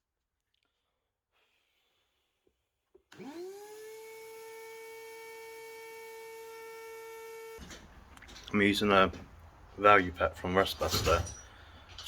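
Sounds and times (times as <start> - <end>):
vacuum motor whining and humming: 3.1 - 7.7.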